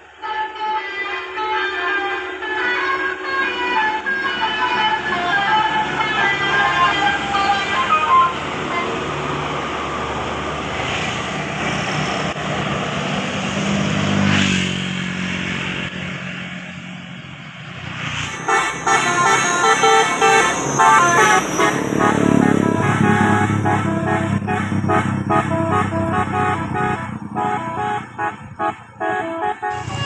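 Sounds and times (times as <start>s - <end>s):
bus passing: 0.0s - 30.0s
musical air horn melody: 0.2s - 9.0s, 18.2s - 30.0s.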